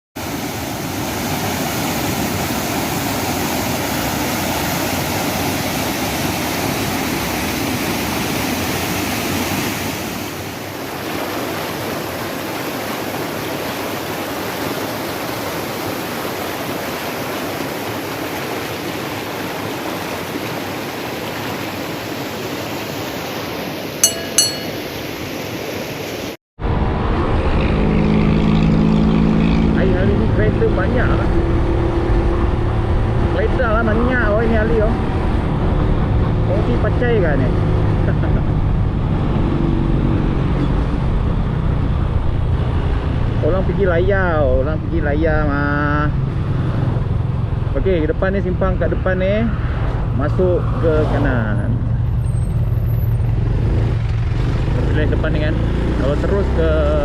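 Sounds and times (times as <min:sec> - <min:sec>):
ringing clinks: 0:24.0 - 0:25.0.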